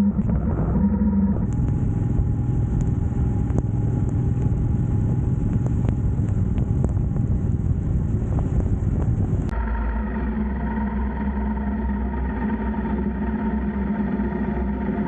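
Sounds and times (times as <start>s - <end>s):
motorcycle engine rumble: 0.0s - 15.0s
wind noise: 0.0s - 15.0s.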